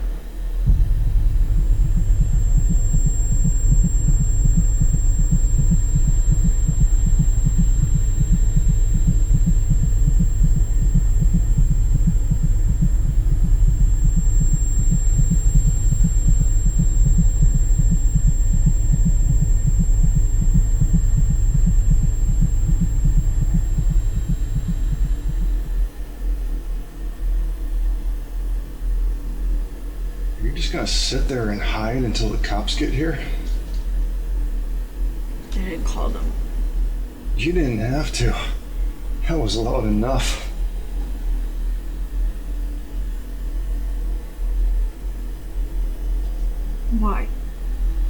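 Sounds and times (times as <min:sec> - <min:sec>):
pounding heartbeat: 0:00.0 - 0:48.0
high-pitched ringing tone: 0:00.7 - 0:11.5.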